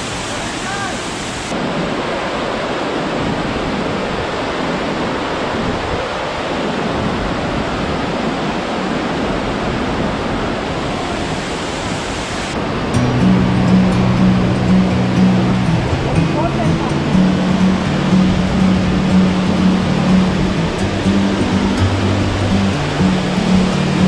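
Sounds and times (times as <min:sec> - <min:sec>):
small waterfall splashing: 0:00.0 - 0:01.7.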